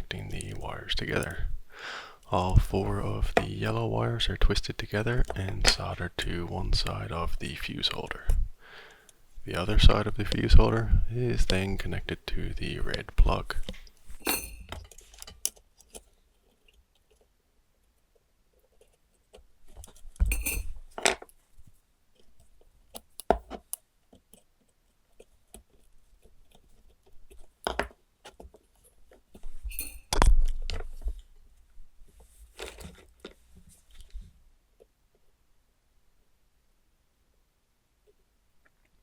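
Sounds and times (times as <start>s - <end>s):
metal tools clinking: 14.2s - 15.4s, 20.2s - 20.8s, 29.7s - 30.2s.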